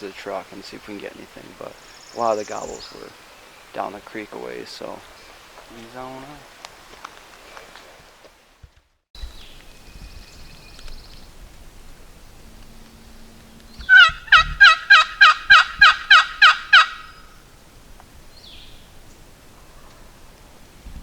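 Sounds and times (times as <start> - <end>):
turkey yelping: 13.8 - 17.3.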